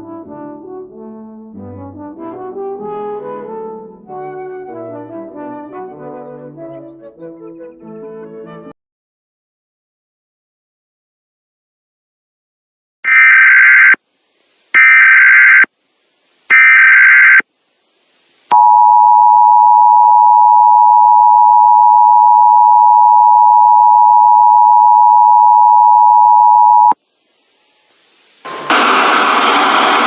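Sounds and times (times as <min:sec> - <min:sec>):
harsh digital data tones: 0:13.1 - 0:14.0, 0:14.8 - 0:15.7, 0:16.5 - 0:17.4
two-tone attention signal: 0:18.5 - 0:27.0.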